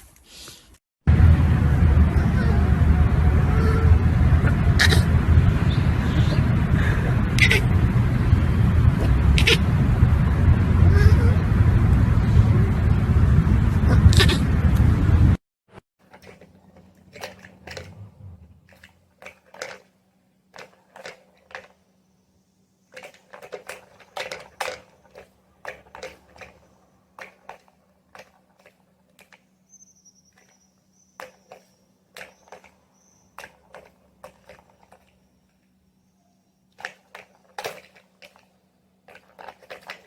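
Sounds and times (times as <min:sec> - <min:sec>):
crunching and clicking: 0:22.9 - 0:29.5, 0:36.7 - 0:40.0.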